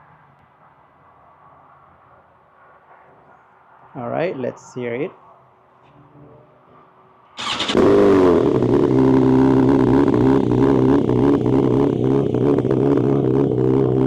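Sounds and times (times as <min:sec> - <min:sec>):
motorcycle engine starting and idling: 0:07.4 - 0:14.0.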